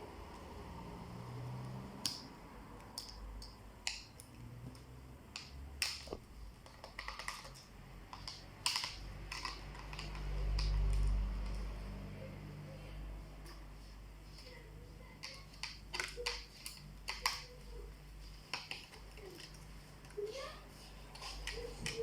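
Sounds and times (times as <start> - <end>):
plastic and metal parts clicking: 5.3 - 11.6.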